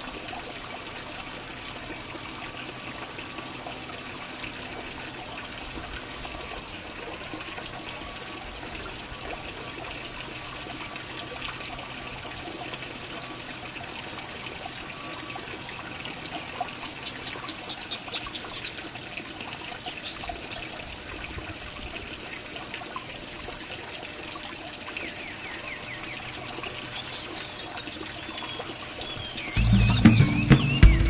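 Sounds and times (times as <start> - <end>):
steady high-pitched hiss: 29.6 - 31.0.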